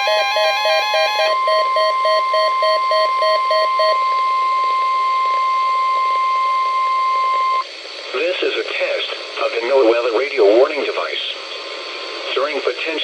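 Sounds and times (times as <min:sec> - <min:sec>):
lower pulsing beep: 0:00.0 - 0:07.7.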